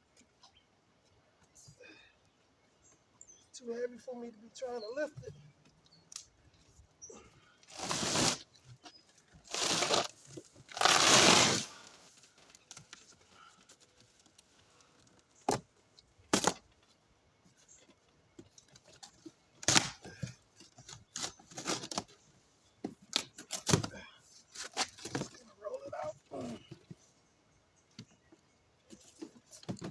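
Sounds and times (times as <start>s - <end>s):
cardboard box tearing: 7.7s - 8.4s, 9.5s - 11.9s
knocks and crinkles: 7.7s - 27.2s, 27.9s - 29.9s.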